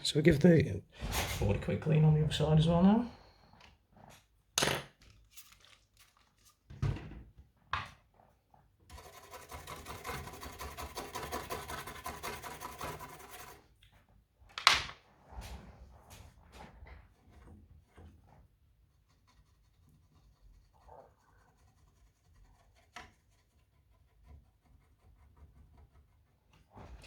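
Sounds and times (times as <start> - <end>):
brush scrubbing circuit board: 8.9 - 13.6.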